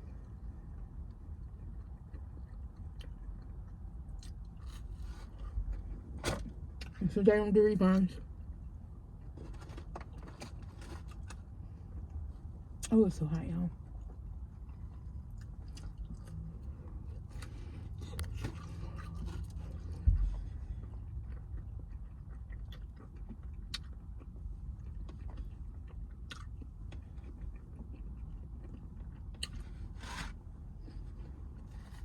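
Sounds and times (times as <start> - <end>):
person chewing food: 0.0 - 6.2, 13.9 - 32.0
steady low hum: 0.0 - 32.0.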